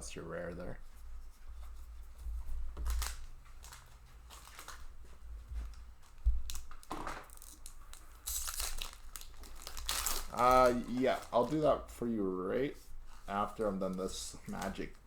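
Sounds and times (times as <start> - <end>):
playing cards rustling: 1.8 - 12.0, 12.8 - 15.0
foil wrapper tearing and crinkling: 2.8 - 5.0, 6.0 - 11.8, 13.1 - 15.0.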